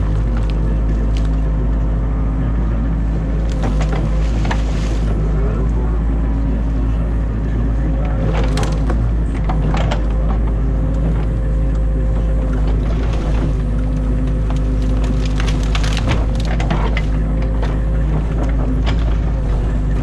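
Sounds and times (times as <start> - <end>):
branches cracking and snapping: 0.0 - 1.8, 3.3 - 5.1, 8.3 - 11.1, 12.5 - 20.0
diesel engine running: 0.0 - 20.0.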